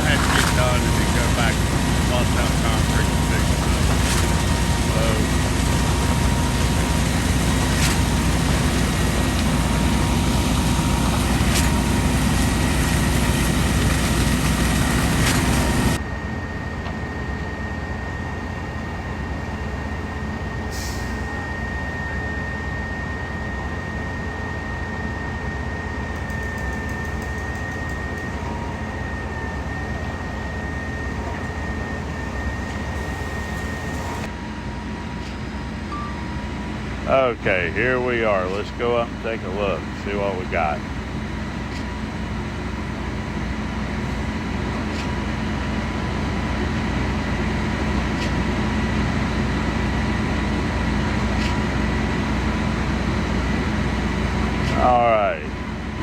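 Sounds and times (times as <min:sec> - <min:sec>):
heavy diesel engines running: 0:00.0 - 0:56.0.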